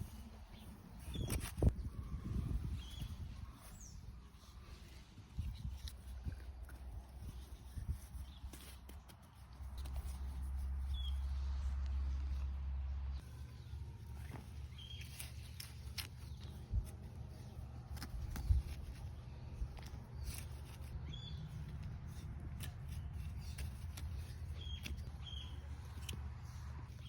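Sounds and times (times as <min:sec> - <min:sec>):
bird chirping: 0:13.1 - 0:16.6, 0:19.2 - 0:22.2, 0:24.2 - 0:27.0.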